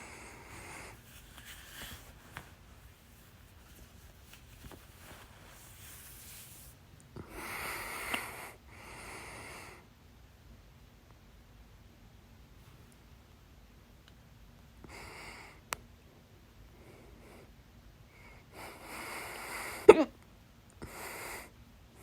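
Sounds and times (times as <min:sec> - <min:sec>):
noisy breaths: 0:00.0 - 0:06.6, 0:07.2 - 0:09.9, 0:16.7 - 0:19.9.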